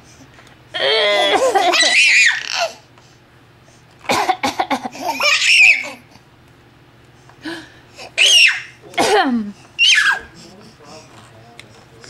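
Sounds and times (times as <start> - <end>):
woman coughing: 1.0 - 1.8, 4.1 - 5.1, 8.9 - 9.6
babies laughing: 1.2 - 2.8, 4.1 - 6.2, 8.1 - 8.8, 9.8 - 10.6.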